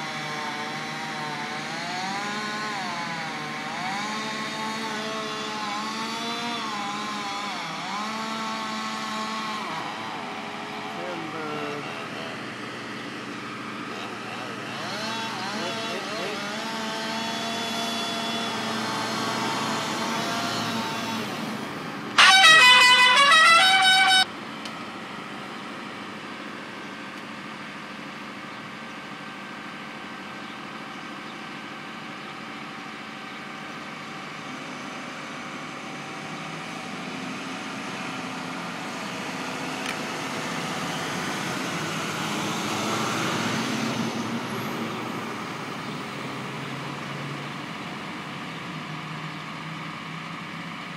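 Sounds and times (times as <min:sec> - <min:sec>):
heavy engine running: 0:00.0 - 0:50.9
high rising tone blast: 0:22.2 - 0:24.3.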